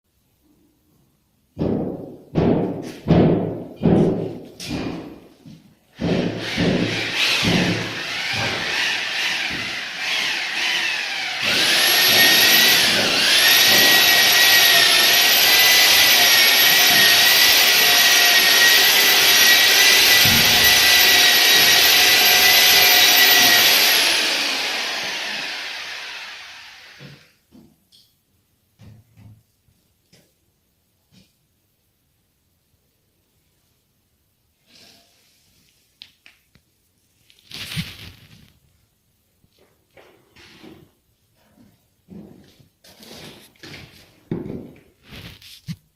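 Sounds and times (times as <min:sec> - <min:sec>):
electric tool motor whining: 0:06.4 - 0:27.1.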